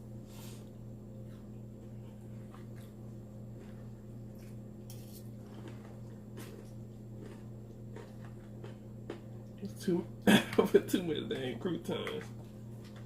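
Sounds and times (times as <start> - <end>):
low electrical hum: 0.0 - 13.0
chewing crunchy salad: 0.4 - 9.8, 11.4 - 13.0.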